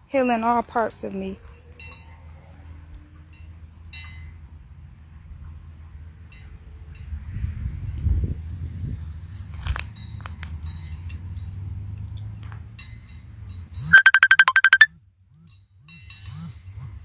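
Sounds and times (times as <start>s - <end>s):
phone ringing: 13.9s - 14.9s.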